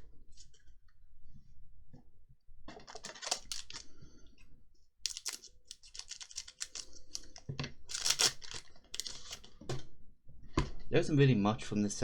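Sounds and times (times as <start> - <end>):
trading cards rustling and clicking: 2.9 - 3.9, 5.1 - 9.7.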